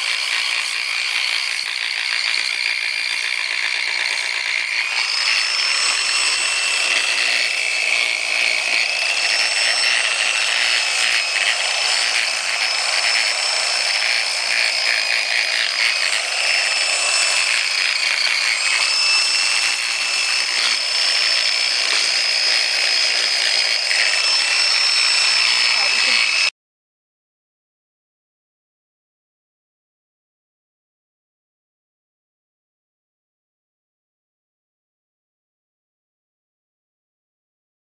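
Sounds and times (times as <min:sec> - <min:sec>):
machine tool cutting metal: 0:00.0 - 0:26.5.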